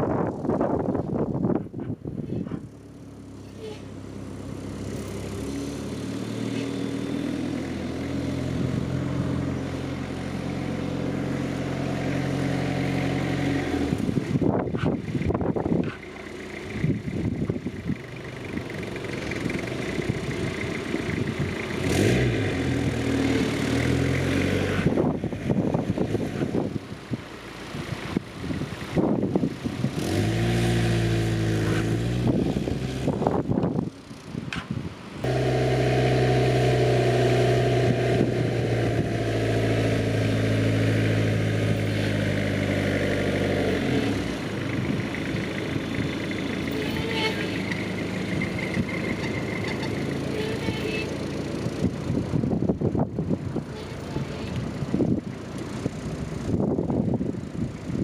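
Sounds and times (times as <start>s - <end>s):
engine revving: 3.2s - 17.6s, 18.3s - 26.7s, 29.0s - 33.7s, 35.2s - 51.9s.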